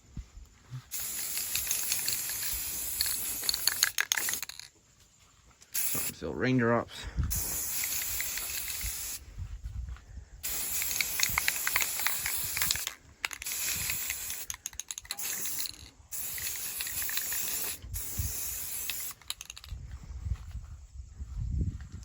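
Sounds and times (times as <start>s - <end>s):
spray can hissing: 0.9s - 4.7s, 5.7s - 6.2s, 7.3s - 9.2s, 10.4s - 19.7s.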